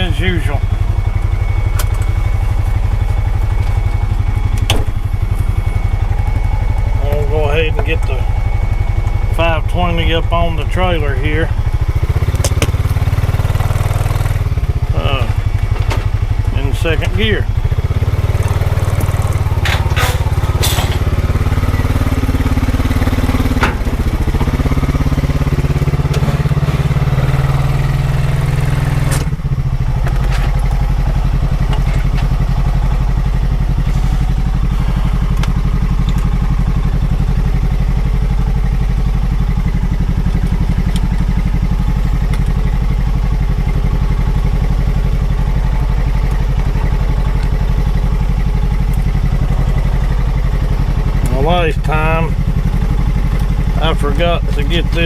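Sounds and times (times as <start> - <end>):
engine working and idling: 0.0 - 55.0
sharp metal clanks: 19.6 - 21.2.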